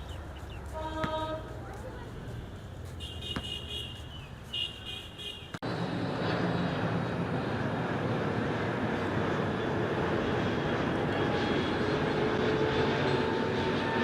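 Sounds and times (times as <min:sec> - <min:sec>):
airliner engine rushing: 0:05.6 - 0:14.0.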